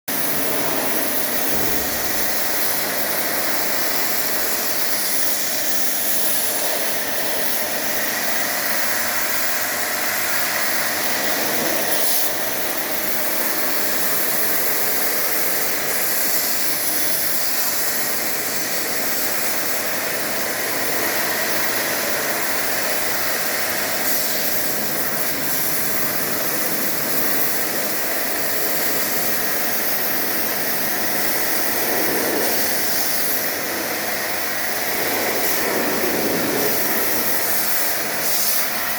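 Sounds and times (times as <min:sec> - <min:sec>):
high-pressure water jet hissing: 0:00.1 - 0:38.9
pressure washer pump running: 0:00.1 - 0:38.9.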